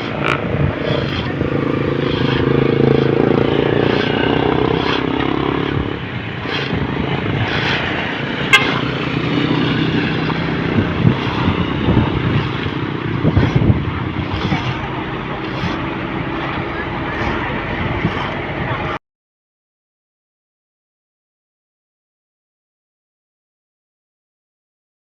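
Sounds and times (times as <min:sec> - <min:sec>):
vehicle engines passing: 0:00.0 - 0:19.0
car horn toot: 0:08.4 - 0:09.0.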